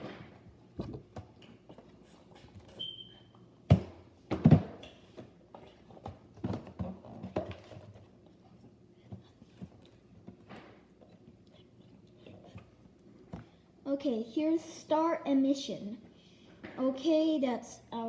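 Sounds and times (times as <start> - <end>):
short high squeak: 2.8 - 3.3
packages knocking and rustling: 3.7 - 8.1.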